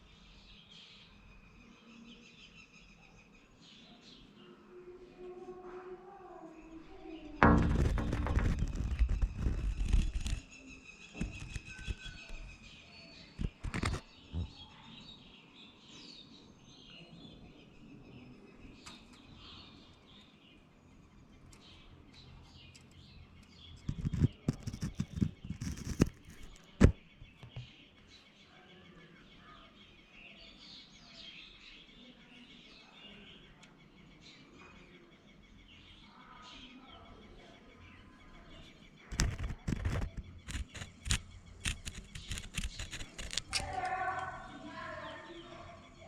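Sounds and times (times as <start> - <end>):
birds chirping faintly: 0.0 - 46.0
loud knocks and thumps: 7.4 - 10.4, 13.4 - 14.5, 23.9 - 27.7.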